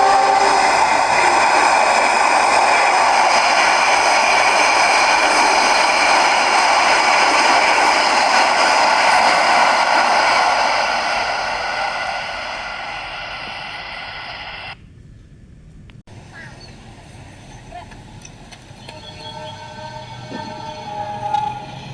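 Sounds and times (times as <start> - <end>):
locomotive horn: 0.0 - 1.7, 19.0 - 21.9
train running past: 0.0 - 14.8, 16.1 - 21.9.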